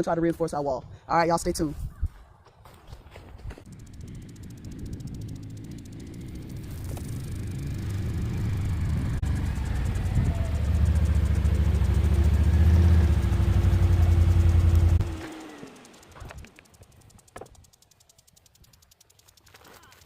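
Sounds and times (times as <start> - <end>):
engine running: 3.3 - 20.0.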